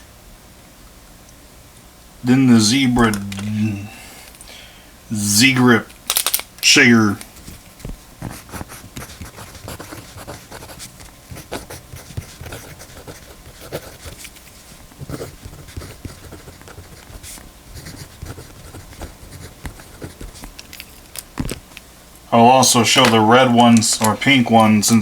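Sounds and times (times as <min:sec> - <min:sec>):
mechanical pencils clicking and tapping: 0:06.1 - 0:07.4, 0:18.0 - 0:21.8, 0:23.0 - 0:25.0.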